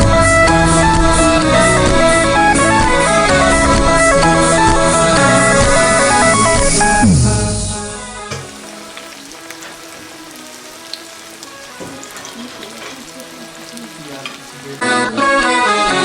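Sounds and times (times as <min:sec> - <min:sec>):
fish sizzling in hot oil: 0:08.3 - 0:15.0
oil popping: 0:08.3 - 0:15.0.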